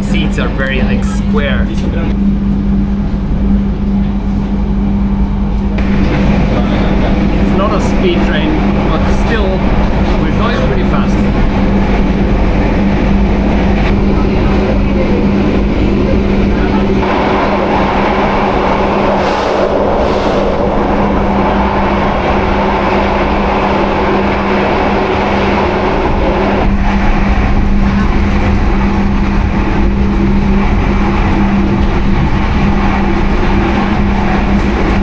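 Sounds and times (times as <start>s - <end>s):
constant low hum: 0.0s - 35.0s
train wheels rumbling on track: 0.0s - 35.0s.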